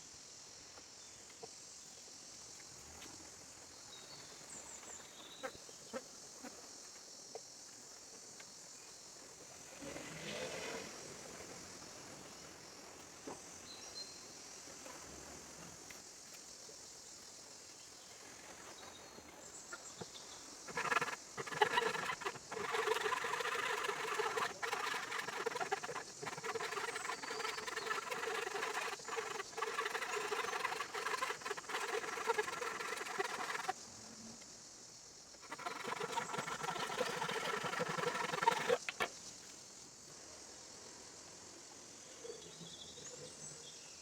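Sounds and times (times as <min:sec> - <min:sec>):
sharp ticks: 0:20.7 - 0:33.7
tool scraping wood: 0:20.7 - 0:33.8, 0:35.4 - 0:39.1.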